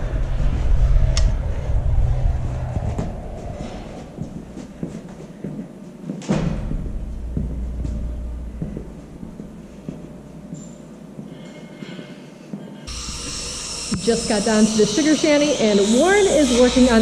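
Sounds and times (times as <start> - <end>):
low rumble: 0.0 - 5.4, 6.4 - 10.5.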